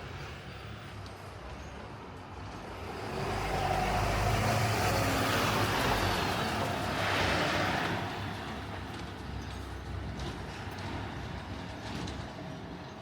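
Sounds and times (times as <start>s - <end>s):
vehicle driving past: 2.8s - 8.2s.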